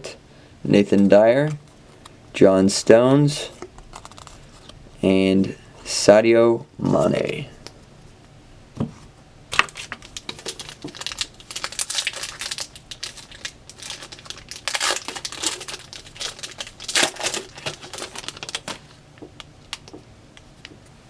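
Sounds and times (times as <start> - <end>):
foil wrapper crinkling and tearing: 3.9 - 4.7, 9.5 - 19.0.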